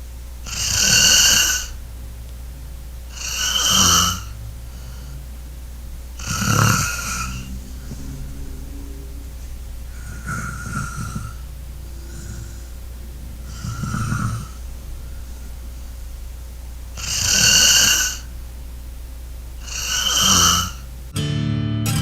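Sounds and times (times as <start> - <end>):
steady low hum: 0.0 - 22.0
person snoring: 0.5 - 1.8, 3.1 - 5.3, 6.2 - 15.6, 17.0 - 18.3, 19.6 - 20.8.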